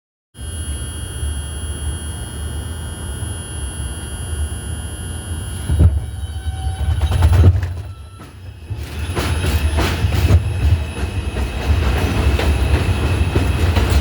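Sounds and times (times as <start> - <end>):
high-pitched whine: 0.4 - 14.0
subway train rumbling: 5.3 - 14.0.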